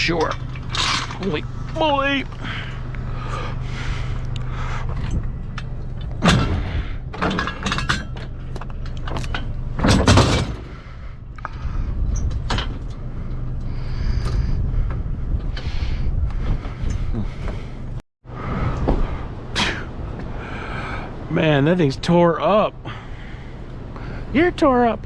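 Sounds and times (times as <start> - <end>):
steady low hum: 0.0 - 25.0
metal jack knocking and scraping: 5.0 - 10.7
loud metal clunks: 6.0 - 11.0.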